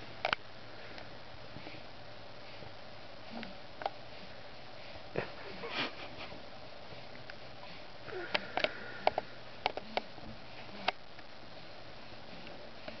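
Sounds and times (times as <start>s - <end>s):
sniffing breaths: 0.7s - 13.0s.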